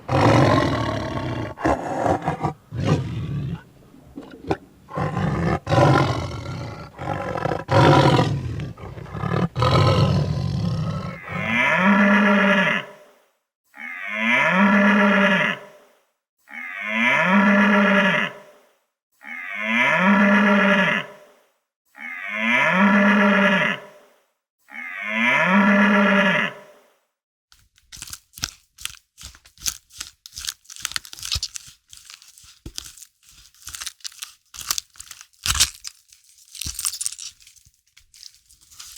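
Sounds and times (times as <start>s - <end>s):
lion roaring: 0.0s - 12.4s
cow mooing: 4.9s - 13.0s, 13.8s - 15.7s, 16.5s - 18.5s, 19.2s - 21.2s, 22.0s - 23.9s, 24.7s - 26.8s.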